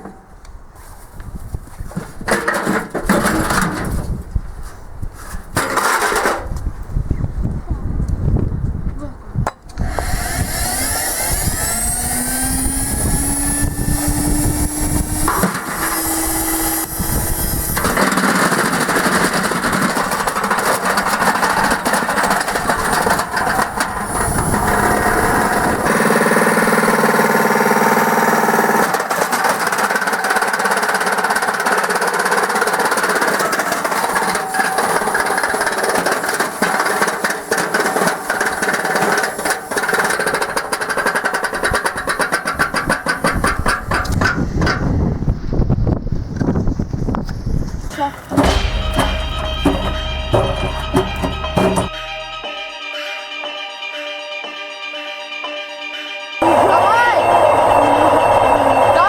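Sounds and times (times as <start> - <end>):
washing machine rattling and banging: 2.2 - 4.2, 12.3 - 45.1, 48.2 - 52.0
washing machine motor whining: 9.9 - 43.8, 56.4 - 59.0.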